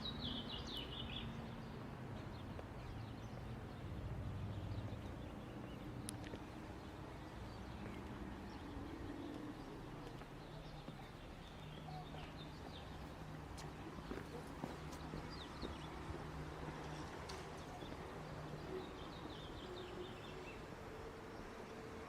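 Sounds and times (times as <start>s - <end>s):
distant traffic rumble: 0.0s - 22.0s.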